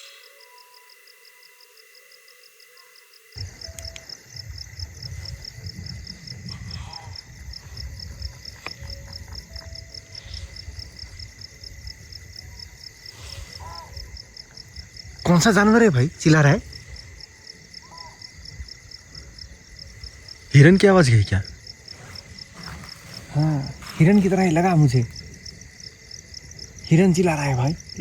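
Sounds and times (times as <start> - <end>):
night insects chirping: 0.0 - 28.0
low wind rumble: 3.4 - 28.0
faint animal call: 6.4 - 11.2, 13.1 - 14.6, 17.7 - 18.5.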